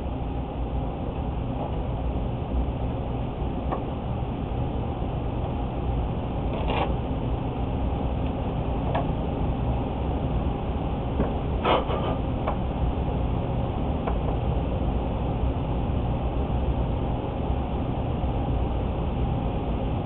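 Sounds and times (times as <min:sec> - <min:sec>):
low rumbling background noise: 0:00.0 - 0:20.0.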